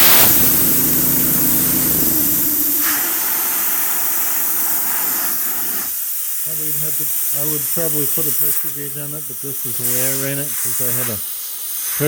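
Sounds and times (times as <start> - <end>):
compressed air hissing: 0.0 - 12.0
engine running air compressor: 0.0 - 12.0.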